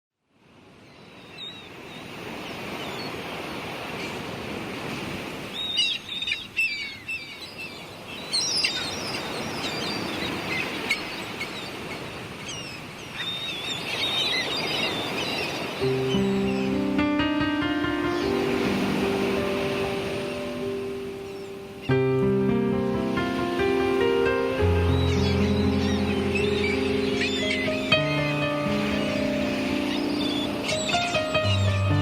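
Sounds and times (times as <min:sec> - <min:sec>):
sea waves washing: 0:00.4 - 0:32.0
seagulls calling: 0:00.8 - 0:32.0
piano music: 0:15.6 - 0:32.0.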